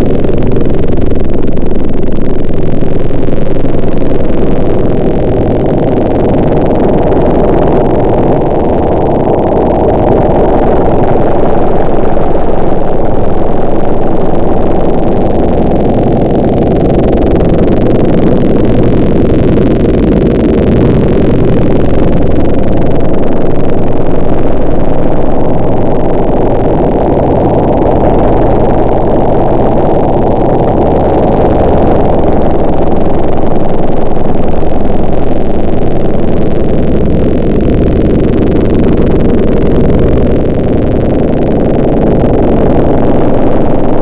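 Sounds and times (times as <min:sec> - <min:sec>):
loud motor running: 0:00.0 - 0:44.0.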